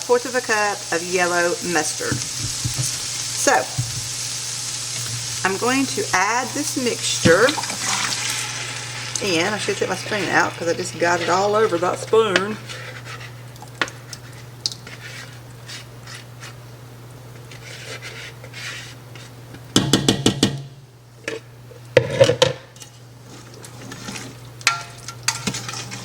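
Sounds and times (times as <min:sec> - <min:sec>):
spoon stirring and scraping in pot: 0:00.2 - 0:04.3, 0:04.9 - 0:16.6, 0:17.3 - 0:19.8, 0:21.2 - 0:26.0
spoon clattering against pot: 0:24.6 - 0:25.8.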